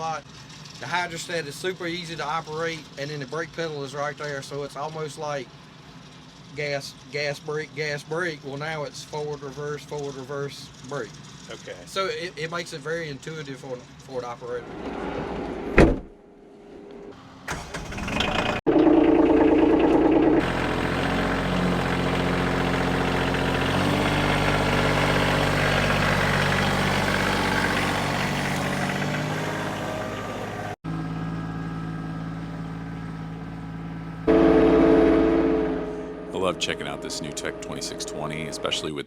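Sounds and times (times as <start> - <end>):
tractor diesel engine running: 17.5 - 34.7.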